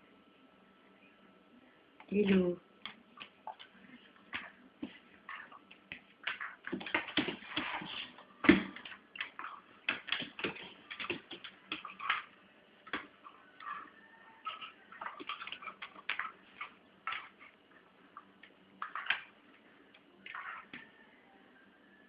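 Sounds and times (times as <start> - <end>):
animals scrabbling and clicking: 2.2 - 17.5.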